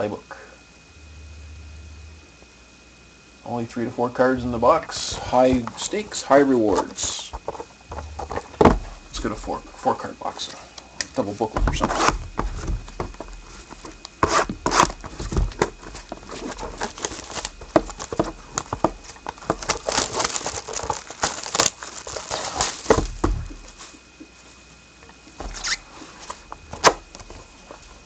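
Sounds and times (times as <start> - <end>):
card pack clicks and rustles: 5.0 - 9.4, 11.3 - 24.0
packaging torn and crinkled: 15.9 - 23.1.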